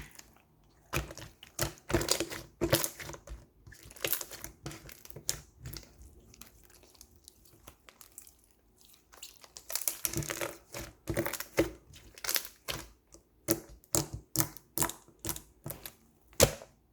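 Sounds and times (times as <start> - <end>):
slime squished by hand: 0.0 - 16.7
slime crackling and popping: 9.0 - 16.6.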